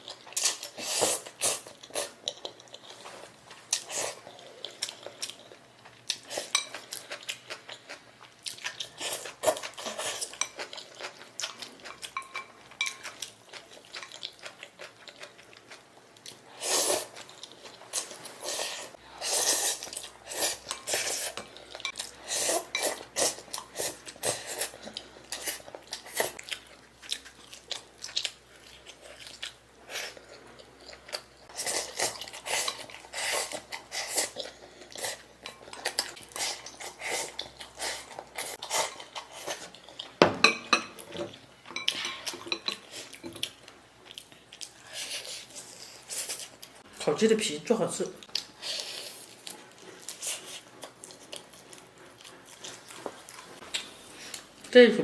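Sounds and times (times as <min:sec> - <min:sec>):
person chewing food: 0:00.0 - 0:46.9, 0:48.2 - 0:54.7
cutlery clinking on a dish: 0:11.9 - 0:13.1, 0:40.2 - 0:43.4.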